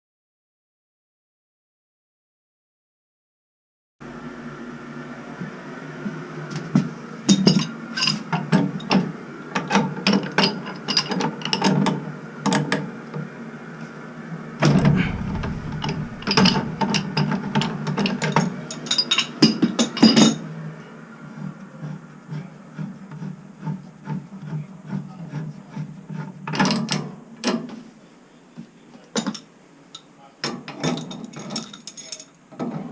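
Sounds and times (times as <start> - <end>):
heavy knock: 14.7 - 18.5.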